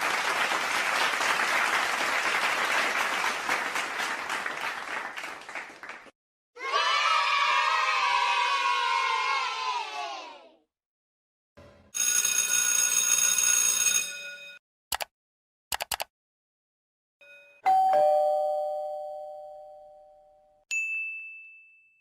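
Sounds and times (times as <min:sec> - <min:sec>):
quick clicks: 0:14.9 - 0:15.1, 0:15.7 - 0:16.1
short high ding: 0:17.2 - 0:22.0
two-note doorbell chime: 0:17.2 - 0:22.0.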